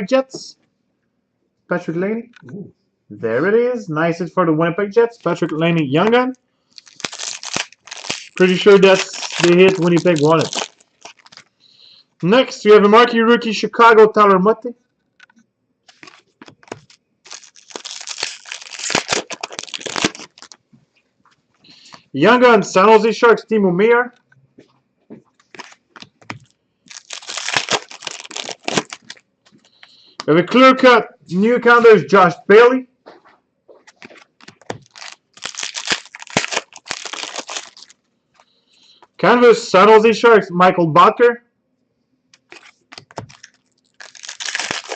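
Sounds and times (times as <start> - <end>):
cards shuffling and rustling: 6.0 - 11.5, 15.9 - 20.6, 25.3 - 29.7, 33.8 - 37.9, 42.4 - 44.9.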